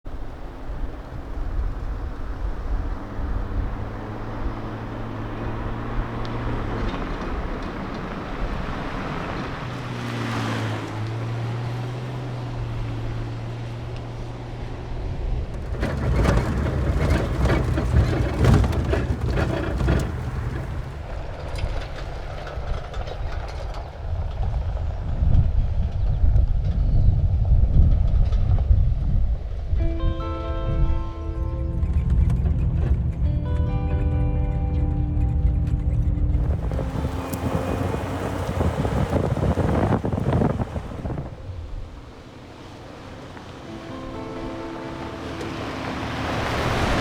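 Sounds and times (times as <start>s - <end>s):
vehicle engine droning: 0.1s - 47.0s
dense rattling and knocking: 15.5s - 24.0s, 31.8s - 41.5s.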